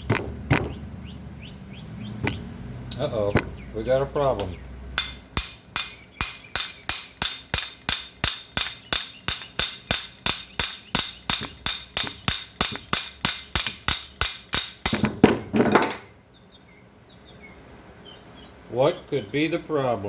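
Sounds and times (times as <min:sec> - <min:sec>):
hammer striking metal: 0:00.0 - 0:00.8, 0:02.2 - 0:15.5
rough metallic clatter: 0:00.0 - 0:00.9, 0:02.2 - 0:16.1.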